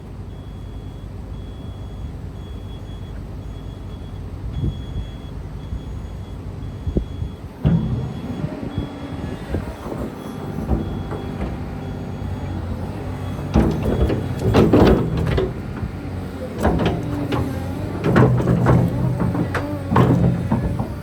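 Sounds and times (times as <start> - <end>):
excavator diesel engine drone: 0.0 - 21.0.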